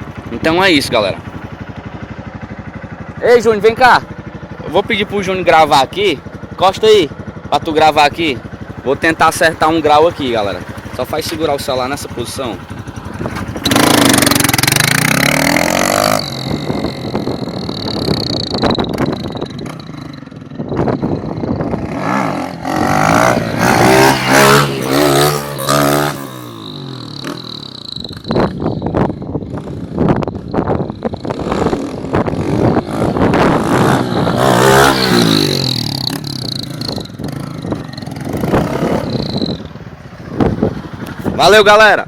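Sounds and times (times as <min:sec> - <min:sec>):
motorcycle accelerating hard: 0:08.2 - 0:41.7.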